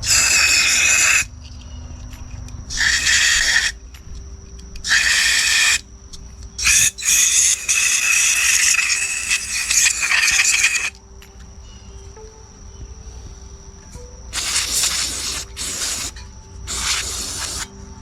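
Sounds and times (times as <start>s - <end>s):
spray hissing in bursts: 0.0s - 1.3s, 2.7s - 3.8s, 4.8s - 5.8s, 6.6s - 10.9s, 14.3s - 17.7s.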